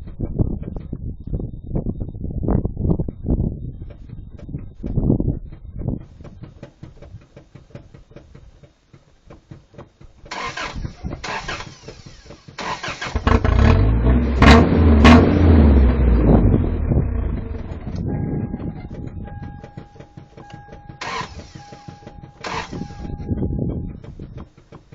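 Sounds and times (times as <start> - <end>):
car engine cranking: 9.5 - 24.9
car engine revving: 10.3 - 18.0.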